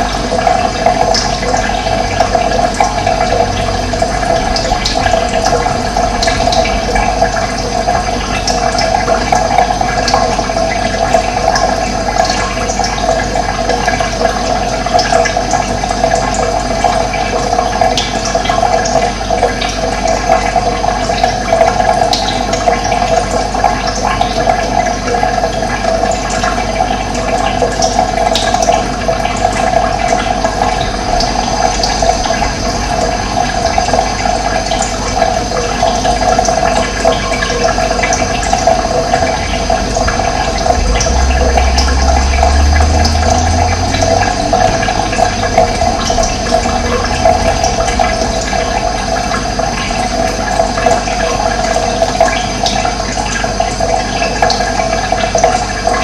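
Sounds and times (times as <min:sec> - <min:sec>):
water rushing and splashing: 0:00.0 - 0:56.0
low rumble: 0:00.5 - 0:11.3, 0:29.9 - 0:36.0, 0:37.5 - 0:51.4.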